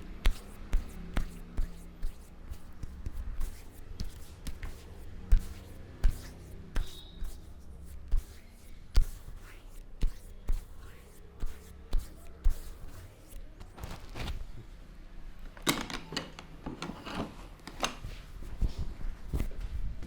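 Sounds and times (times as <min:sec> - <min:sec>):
rubbing of skin and hair: 0:00.0 - 0:13.8.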